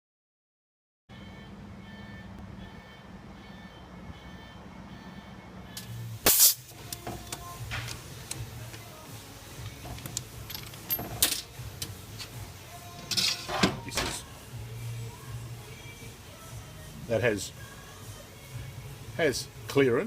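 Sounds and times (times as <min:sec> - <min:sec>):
low steady hum: 0:01.1 - 0:19.7
metal parts knocking and clattering: 0:09.7 - 0:11.5, 0:13.0 - 0:14.2.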